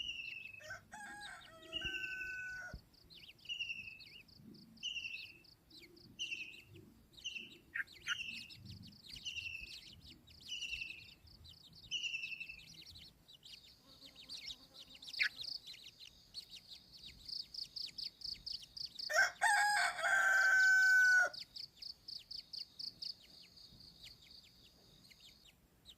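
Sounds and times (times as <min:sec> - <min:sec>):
small birds chirping: 0:00.0 - 0:25.9
rooster crowing: 0:00.6 - 0:02.8, 0:19.1 - 0:21.4.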